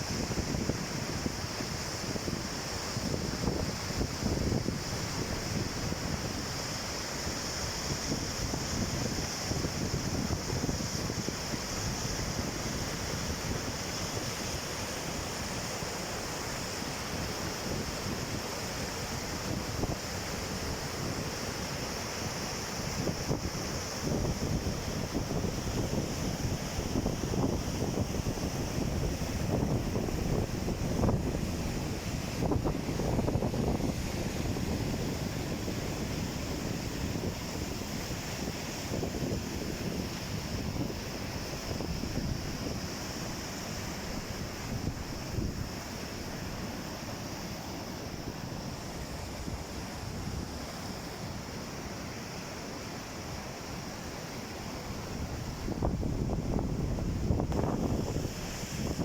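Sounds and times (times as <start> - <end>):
wind buffeting microphone: 55.6 - 59.0.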